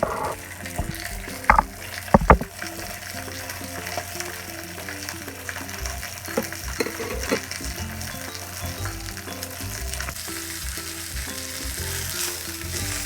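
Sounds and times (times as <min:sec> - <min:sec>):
sharp knocks: 0:00.0 - 0:02.6
food sizzling in a pan: 0:00.0 - 0:13.0
soft background music: 0:00.0 - 0:13.0.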